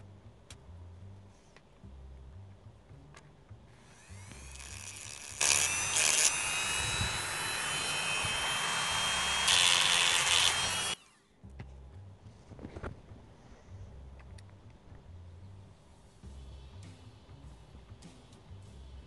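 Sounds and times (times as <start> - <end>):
rotary tool whining: 3.8 - 11.3.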